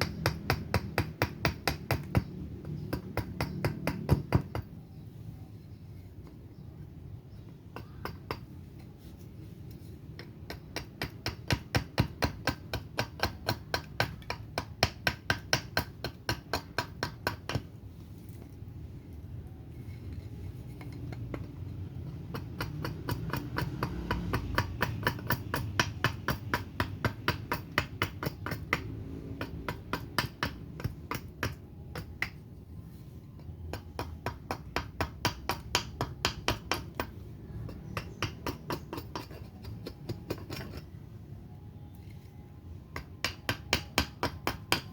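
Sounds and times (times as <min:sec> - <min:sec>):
axe chopping wood: 0:22.2 - 0:32.4.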